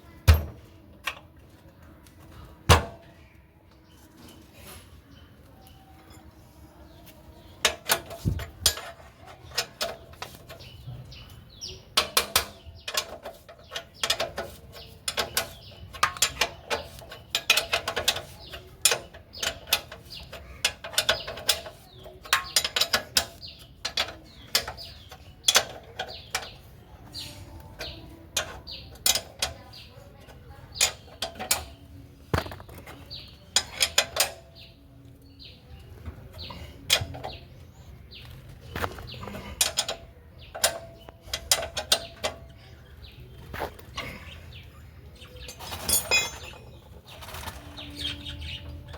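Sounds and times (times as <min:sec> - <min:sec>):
metal hand tools clinking: 0:45.4 - 0:46.9.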